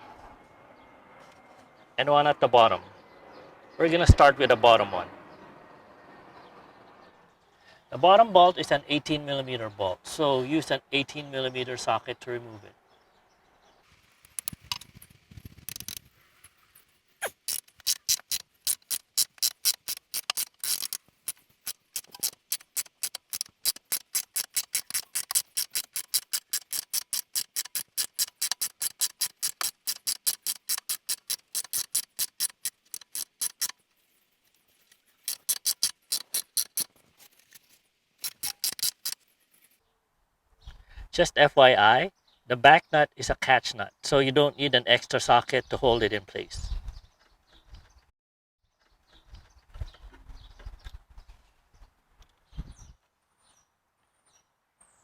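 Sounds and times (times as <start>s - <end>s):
socket ratchet clicking: 17.2s - 33.7s, 35.2s - 36.9s, 38.2s - 39.2s
faint tool handling: 17.2s - 39.8s.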